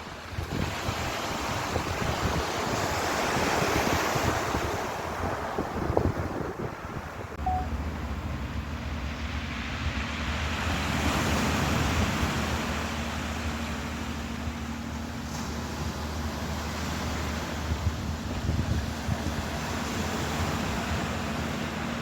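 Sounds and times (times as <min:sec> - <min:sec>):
ocean waves washing in: 0:00.0 - 0:22.0
steady low hum: 0:07.4 - 0:22.0.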